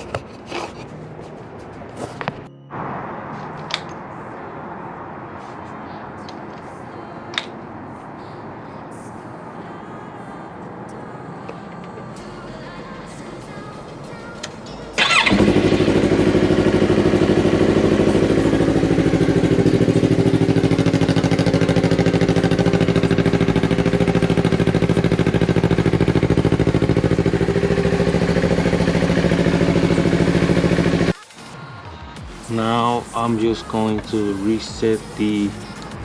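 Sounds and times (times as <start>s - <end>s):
electric starter cranking: 15.0s - 17.2s
motorcycle engine idling: 15.0s - 31.1s.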